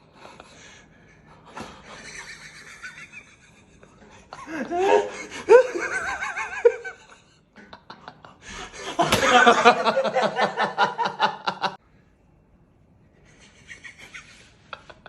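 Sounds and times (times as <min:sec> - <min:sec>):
people laughing: 0:01.5 - 0:11.8, 0:13.4 - 0:15.0.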